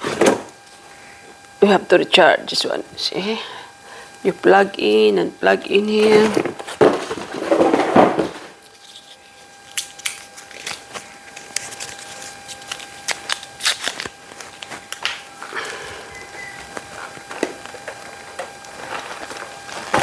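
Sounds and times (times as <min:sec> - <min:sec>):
plastic parts rustling: 0:06.0 - 0:20.0.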